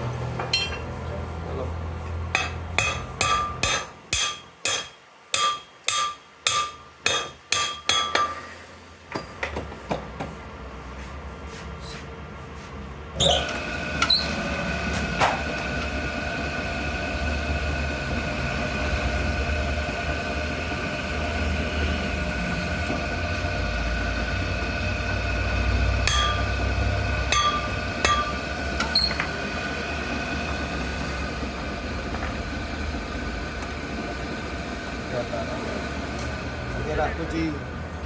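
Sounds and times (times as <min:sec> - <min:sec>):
machine rumbling and whining: 0:00.0 - 0:04.5, 0:13.1 - 0:38.0.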